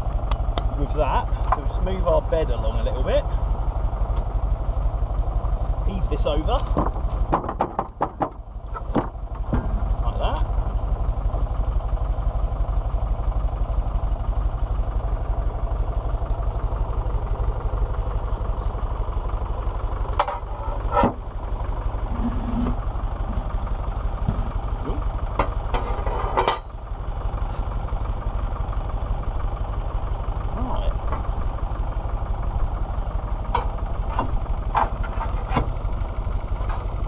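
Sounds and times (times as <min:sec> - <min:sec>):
tractor engine idling: 0:00.0 - 0:37.0
sharp knocks: 0:06.7 - 0:09.8.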